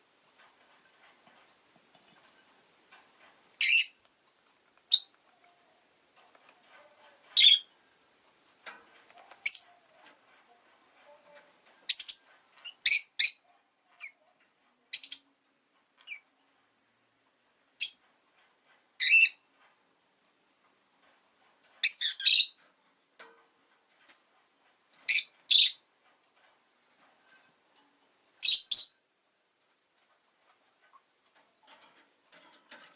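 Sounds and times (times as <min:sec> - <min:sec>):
lovebird shrill chirps: 0:03.6 - 0:04.0, 0:07.4 - 0:07.7, 0:11.9 - 0:13.4, 0:19.0 - 0:19.4, 0:28.4 - 0:29.0.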